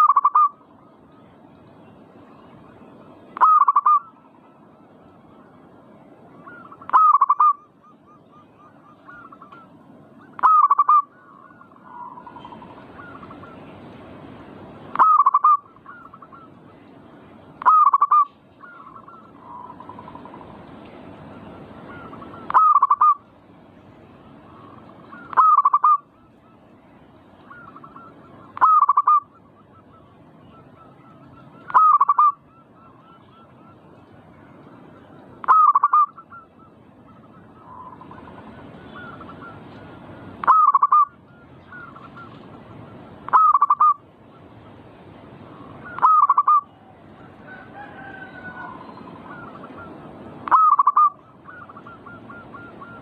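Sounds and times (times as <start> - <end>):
dove cooing: 0.0 - 0.9, 3.3 - 4.2, 6.3 - 13.7, 14.9 - 16.8, 17.6 - 20.6, 21.3 - 23.2, 24.4 - 26.6, 27.4 - 33.9, 34.9 - 44.0, 45.5 - 53.0.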